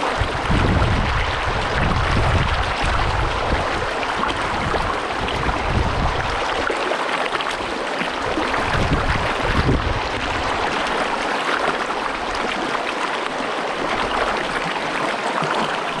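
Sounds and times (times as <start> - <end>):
water running over rocks: 0.0 - 16.0.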